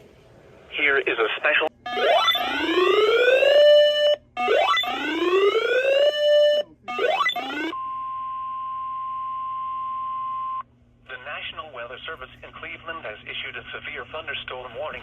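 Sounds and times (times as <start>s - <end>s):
steady warning alarm tone: 1.8s - 10.6s.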